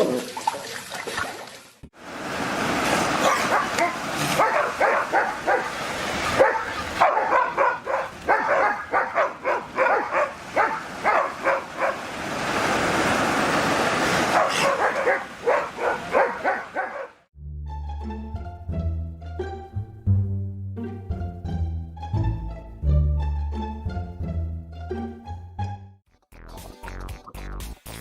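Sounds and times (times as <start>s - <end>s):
dog barking and yipping: 3.2s - 12.0s, 14.3s - 17.2s.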